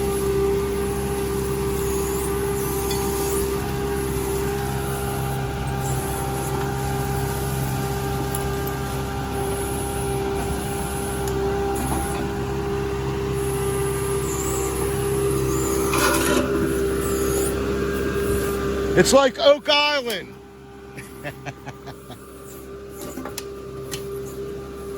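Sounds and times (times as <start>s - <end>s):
excavator engine whining: 0.0s - 24.9s.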